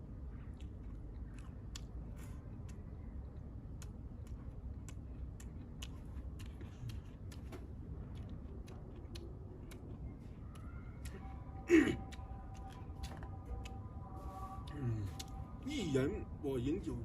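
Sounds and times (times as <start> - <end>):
person chewing food: 0.2 - 15.6.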